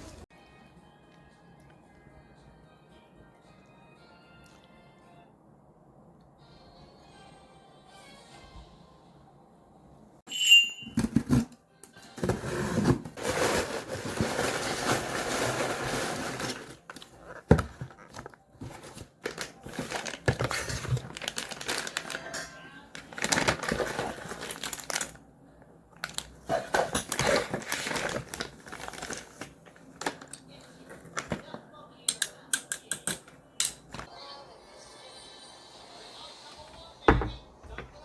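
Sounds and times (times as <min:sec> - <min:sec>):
short ringing clink: 0:10.3 - 0:11.0
crinkling and rustling handling: 0:12.1 - 0:25.3, 0:25.9 - 0:31.8.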